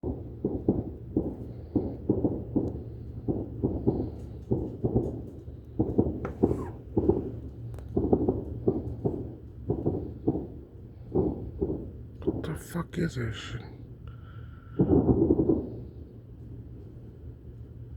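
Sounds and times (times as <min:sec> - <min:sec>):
steady low rumble: 0:00.0 - 0:17.9
dull distant bangs: 0:03.2 - 0:10.5.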